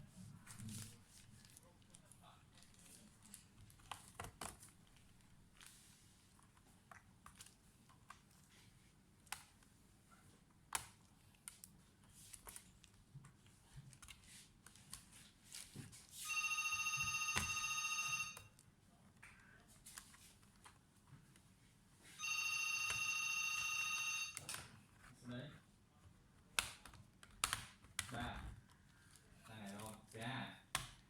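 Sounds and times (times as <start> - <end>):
telephone ringing: 16.2 - 18.5, 22.2 - 24.5.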